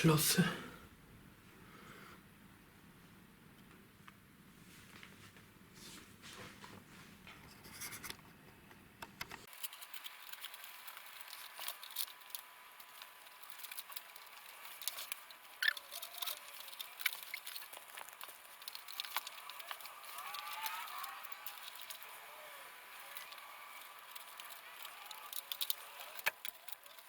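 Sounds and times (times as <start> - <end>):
hands clicking and tapping parts: 8.0 - 22.2, 22.9 - 27.0.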